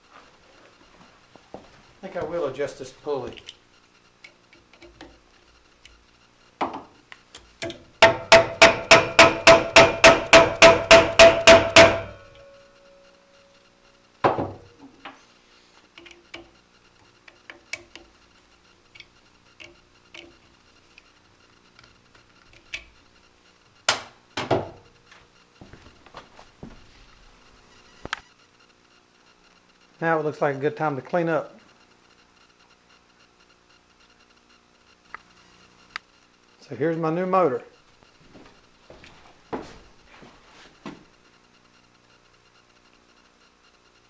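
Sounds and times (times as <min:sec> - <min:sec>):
hammer striking metal pulley: 0:07.6 - 0:12.5.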